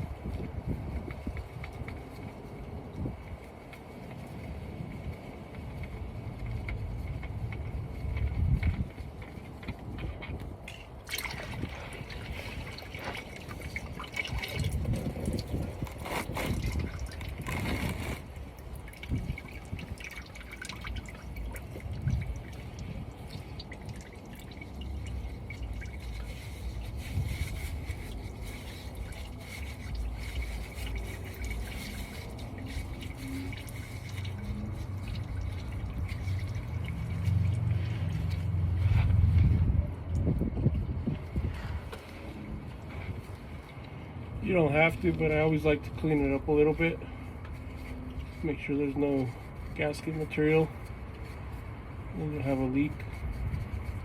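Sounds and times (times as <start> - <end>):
oil trickling and dripping: 0.0 - 54.0
oil dripping into drain pan: 10.7 - 15.9, 18.4 - 26.3, 32.9 - 38.5.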